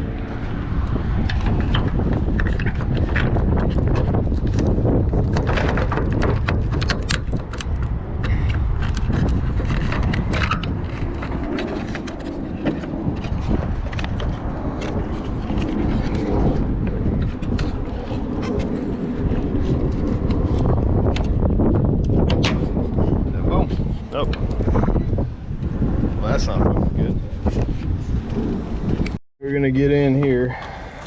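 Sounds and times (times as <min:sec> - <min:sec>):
wind rumble on microphone: 0:00.0 - 0:31.0
clicks and scrapes of door parts: 0:01.2 - 0:16.2.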